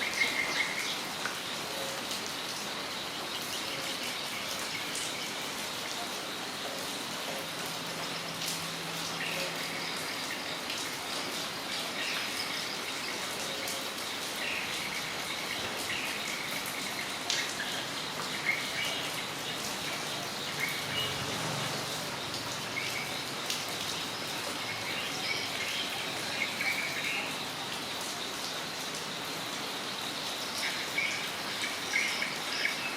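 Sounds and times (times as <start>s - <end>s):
steady rain falling: 0.0s - 32.9s
birds chirping: 7.3s - 21.5s, 22.1s - 27.4s.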